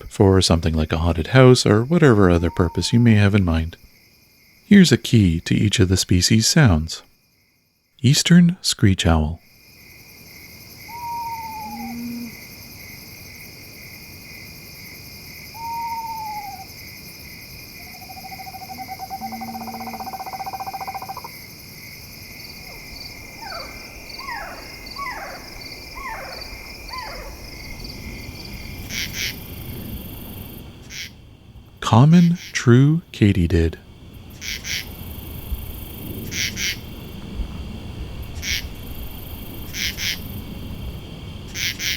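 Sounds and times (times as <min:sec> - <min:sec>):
night insects chirring: 0:00.2 - 0:41.9
screech owl calling: 0:02.0 - 0:03.3, 0:10.8 - 0:12.4, 0:15.5 - 0:16.8, 0:17.8 - 0:21.3, 0:22.6 - 0:27.5.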